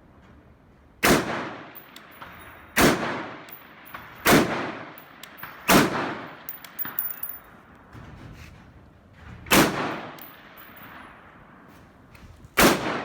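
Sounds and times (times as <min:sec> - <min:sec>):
rifle shots with echo: 0:01.0 - 0:07.2, 0:09.5 - 0:11.1, 0:12.6 - 0:13.0.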